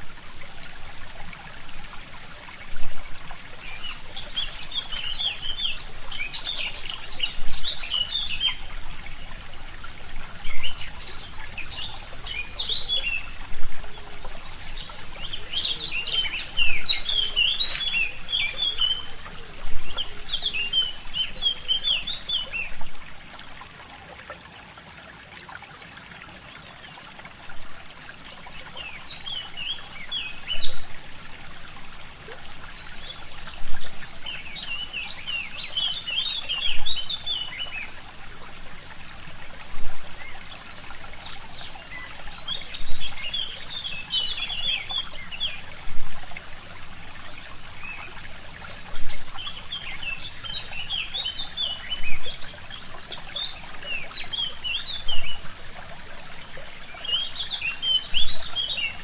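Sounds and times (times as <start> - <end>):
stream trickling: 0.0 - 59.0
birds chirping: 2.5 - 22.8.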